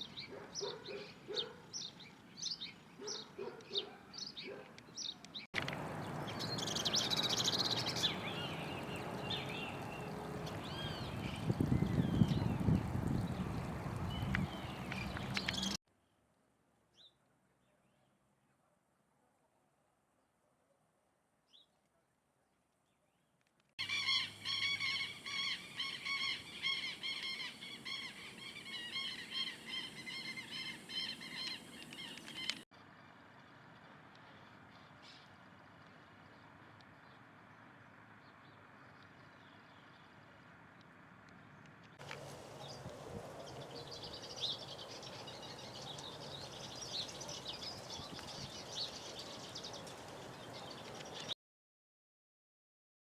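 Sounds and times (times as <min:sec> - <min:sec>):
small birds chirping: 0:00.0 - 0:15.8, 0:23.8 - 0:32.6, 0:41.6 - 0:51.4.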